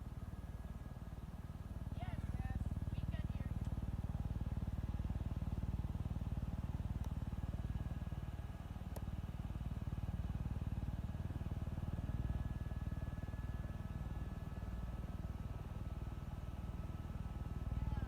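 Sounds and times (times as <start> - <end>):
helicopter running: 1.8 - 8.3, 9.9 - 18.0.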